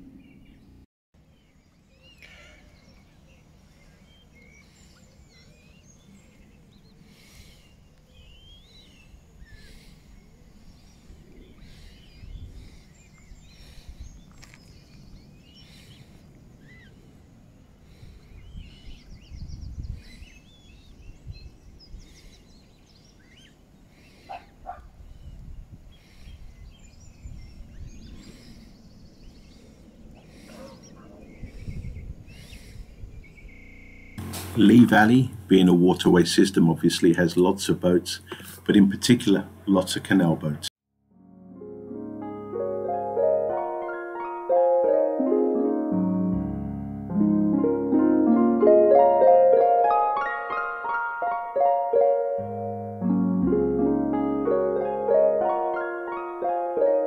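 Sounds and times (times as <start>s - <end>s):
birds chirping and calling: 0.0s - 40.7s
low rumble: 33.5s - 35.7s.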